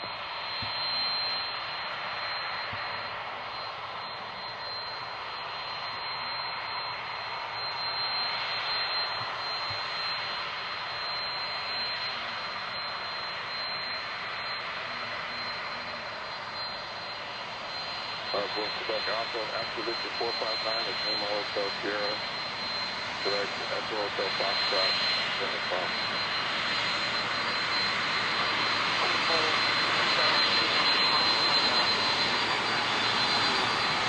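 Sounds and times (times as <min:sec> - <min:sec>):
jet engines running: 0:00.0 - 0:34.0.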